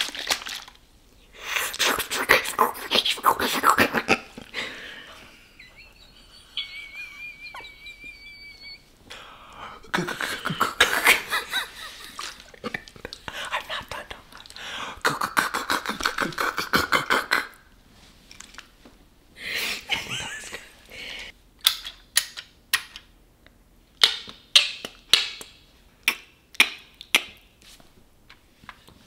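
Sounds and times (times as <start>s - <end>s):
beatbox vocal pulses: 1.5s - 4.4s, 9.9s - 11.3s, 15.0s - 17.6s
mouth clicks and pops: 24.0s - 27.4s.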